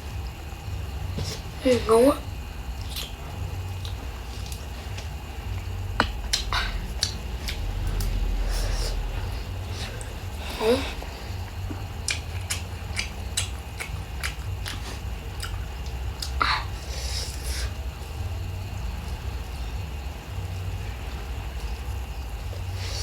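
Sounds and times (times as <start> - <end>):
steady low hum: 0.0 - 23.0
chewing with teeth clicks: 2.8 - 8.4, 11.4 - 18.2.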